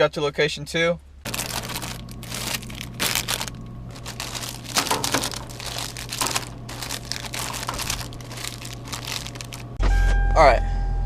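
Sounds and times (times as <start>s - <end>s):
steady low hum: 0.0s - 9.9s
rustling and crinkling: 1.2s - 9.8s.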